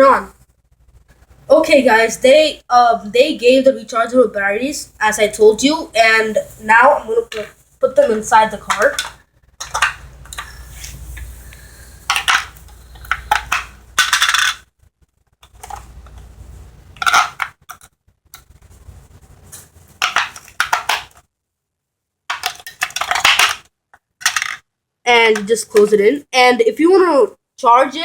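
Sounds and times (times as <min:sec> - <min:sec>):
handling noise: 0:06.3 - 0:21.2.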